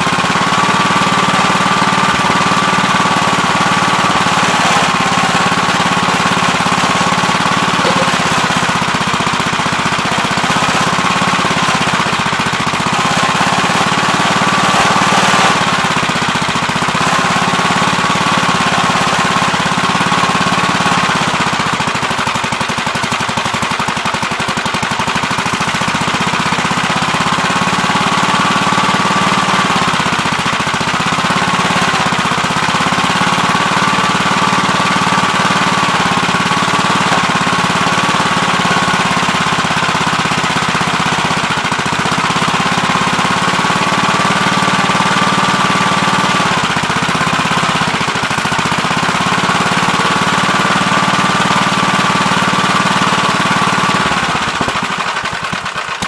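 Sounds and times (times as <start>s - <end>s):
backhoe engine running: 0.0s - 56.0s
fast rattling beat: 4.5s - 9.8s.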